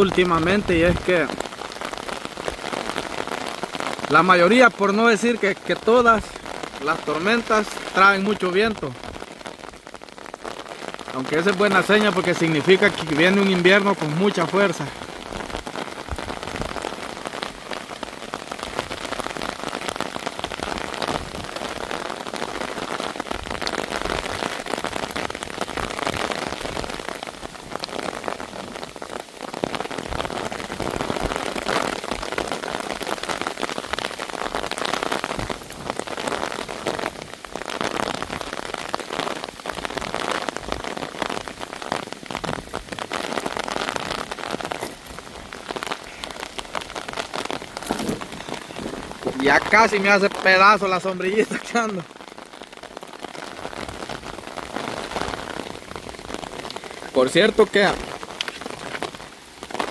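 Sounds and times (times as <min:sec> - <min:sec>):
heavy rain pattering: 0:00.0 - 0:59.9
rain drumming on umbrella: 0:00.0 - 0:59.9
gusts of wind: 0:43.8 - 0:49.8.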